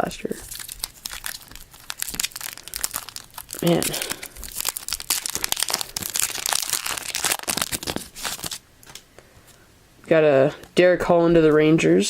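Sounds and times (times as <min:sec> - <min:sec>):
foil wrapper crinkling: 0:00.0 - 0:09.0.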